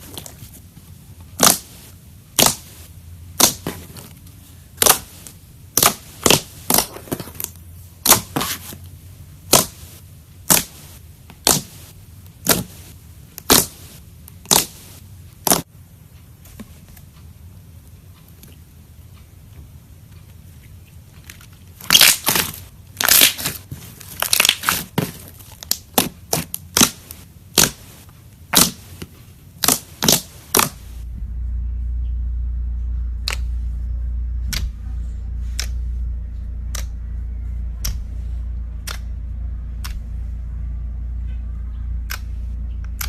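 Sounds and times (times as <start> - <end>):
steady low hum: 0.0 - 43.0
crackling crunching pops: 2.4 - 2.8, 4.8 - 8.6, 11.4 - 12.8, 13.4 - 15.7, 21.8 - 29.0, 29.6 - 31.0.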